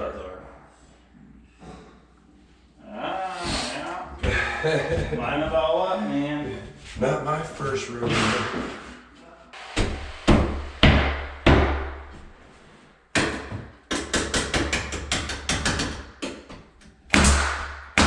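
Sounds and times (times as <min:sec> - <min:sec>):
hammer nailing wood: 0:09.8 - 0:12.2, 0:13.1 - 0:18.0.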